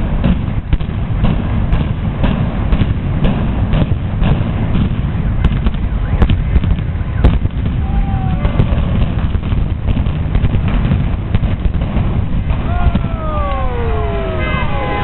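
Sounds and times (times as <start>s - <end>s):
heavy continuous rumble: 0.0s - 15.0s
demolition charges cracking: 7.5s - 15.0s.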